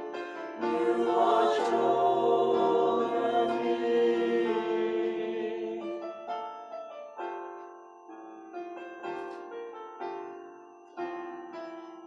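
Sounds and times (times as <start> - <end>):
piano chords and notes: 0.0 - 12.0
person singing worship song: 0.6 - 6.2.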